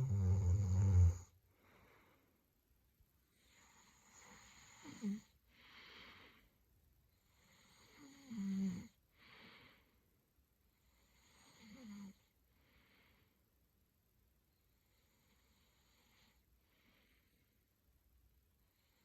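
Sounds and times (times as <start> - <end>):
rattling snore: 0.0 - 1.3
breathy out-breath: 5.5 - 6.5, 9.2 - 10.0.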